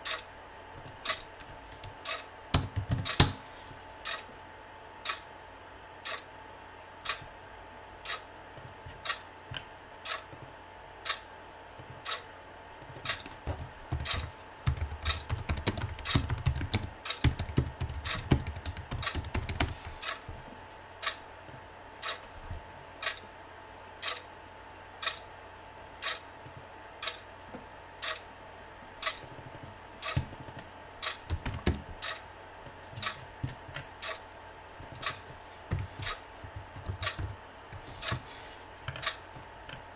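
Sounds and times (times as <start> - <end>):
faint hum: 0.0 - 39.9
keyboard typing: 0.9 - 3.5, 12.9 - 20.2, 30.0 - 32.3, 34.8 - 39.8
clock ticking: 31.0 - 32.3.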